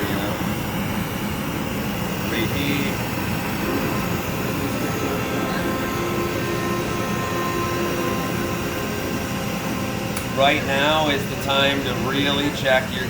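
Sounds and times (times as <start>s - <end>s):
torch flame hissing roar: 0.0s - 13.0s.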